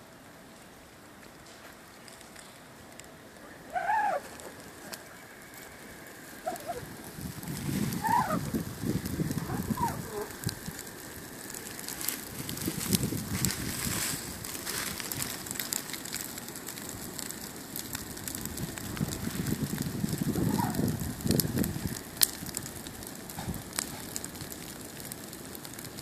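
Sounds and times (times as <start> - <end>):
grass fire crackling: 0.0 - 26.0
geese honking: 8.0 - 8.5.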